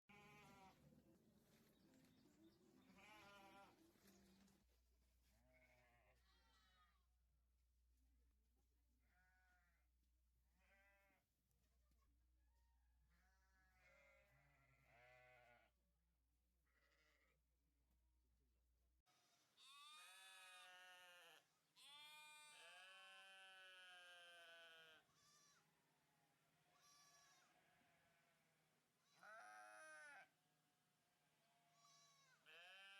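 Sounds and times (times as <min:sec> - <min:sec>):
sheep bleating: 0:00.1 - 0:00.9, 0:02.8 - 0:04.2, 0:05.5 - 0:07.0, 0:09.1 - 0:09.8, 0:10.6 - 0:11.2, 0:13.1 - 0:15.7, 0:19.6 - 0:25.7, 0:26.6 - 0:28.4, 0:29.0 - 0:30.3, 0:31.5 - 0:32.9.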